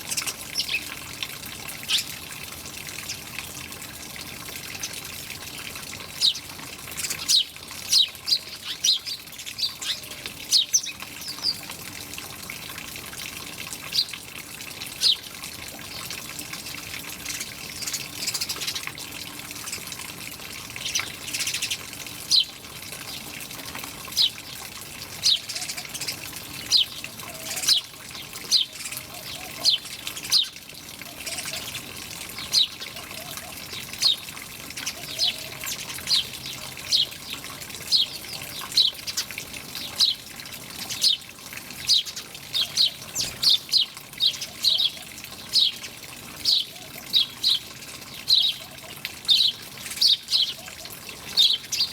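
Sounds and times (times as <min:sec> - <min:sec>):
small birds chirping: 0:00.0 - 0:01.0, 0:04.7 - 0:11.7, 0:17.1 - 0:19.0, 0:20.8 - 0:23.3, 0:24.1 - 0:24.6, 0:25.2 - 0:40.2, 0:41.8 - 0:51.9
water trickling: 0:00.0 - 0:51.9.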